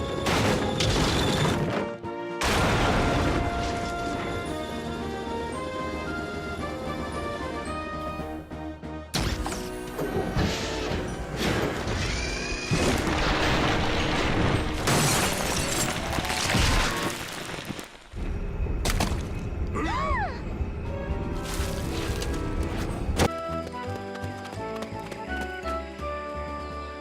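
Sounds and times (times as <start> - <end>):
cartoon background music: 0.0 - 15.2, 19.8 - 27.0
squeal rising and falling: 12.0 - 12.8.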